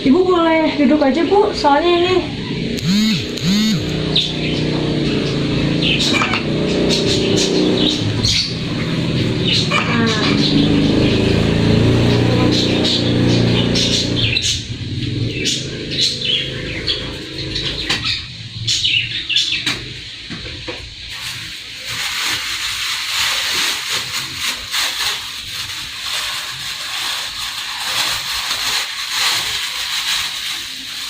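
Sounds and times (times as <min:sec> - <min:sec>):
bird-like chirps: 0:02.4 - 0:19.9.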